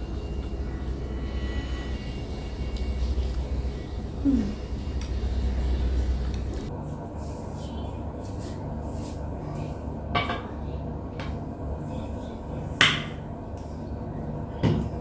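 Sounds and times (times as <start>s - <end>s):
steady low hum: 0.0s - 15.0s
kitchenware clinking: 10.1s - 10.6s.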